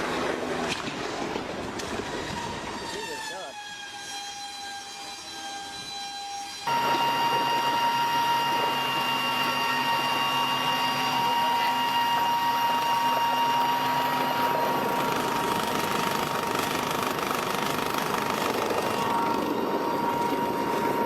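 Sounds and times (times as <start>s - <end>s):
helicopter rotor noise: 0.0s - 21.0s
helicopter turbine whine: 0.0s - 21.0s.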